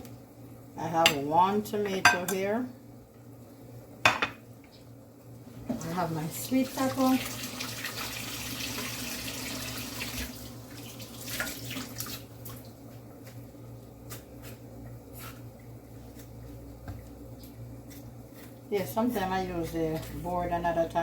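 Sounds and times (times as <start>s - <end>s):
kitchen tap running: 5.7s - 12.7s.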